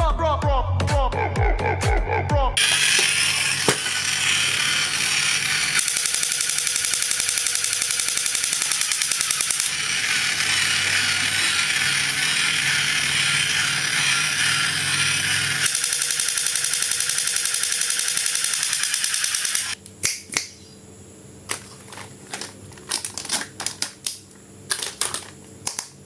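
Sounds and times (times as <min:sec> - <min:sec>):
small mechanism clicking rapidly: 0:02.6 - 0:19.8.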